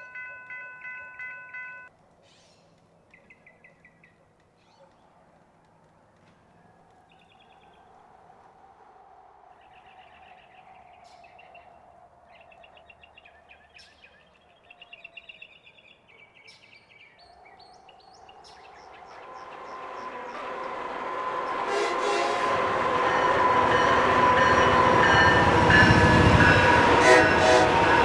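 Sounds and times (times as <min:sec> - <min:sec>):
approaching train: 0:00.0 - 0:02.1, 0:17.2 - 0:28.0
small birds chirping: 0:09.6 - 0:20.5.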